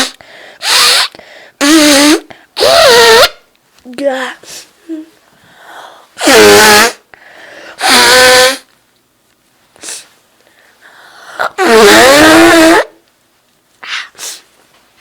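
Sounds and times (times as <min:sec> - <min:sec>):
woman sneezing: 0:00.0 - 0:03.4, 0:07.8 - 0:08.7
intake of breath: 0:00.2 - 0:00.6, 0:05.3 - 0:06.1, 0:07.2 - 0:07.8, 0:09.9 - 0:11.5.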